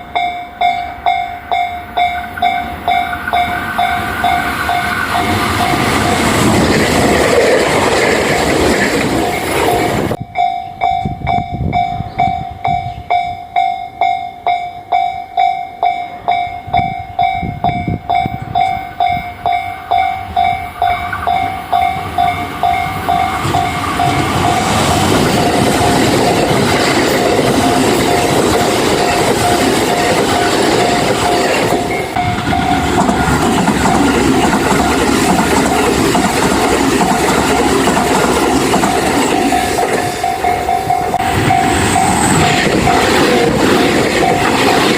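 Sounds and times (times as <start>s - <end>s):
level crossing bell ringing: 0.0s - 6.3s, 9.3s - 33.4s, 38.4s - 43.4s
train running on rails: 0.0s - 44.9s.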